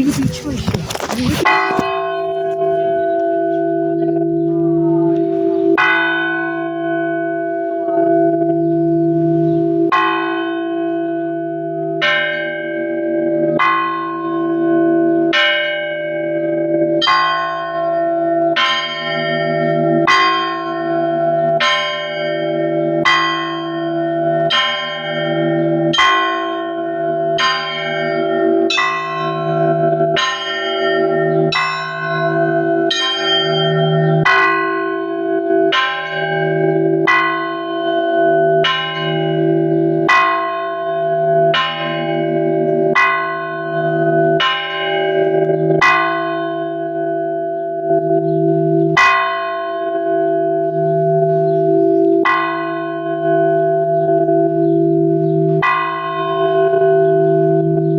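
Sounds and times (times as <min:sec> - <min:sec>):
church bells ringing: 0:00.0 - 0:57.9
hum of large bells: 0:00.9 - 0:57.9.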